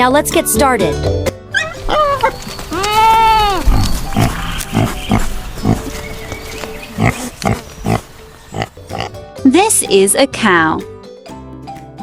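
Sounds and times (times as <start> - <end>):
pig grunting: 3.6 - 6.1, 6.8 - 9.2.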